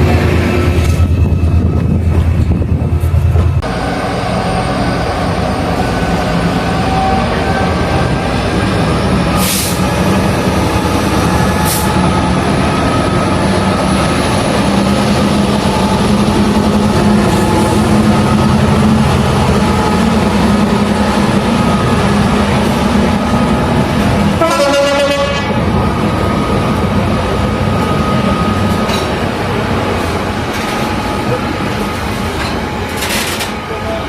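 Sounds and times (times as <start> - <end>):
locomotive engines running: 0.0 - 34.0.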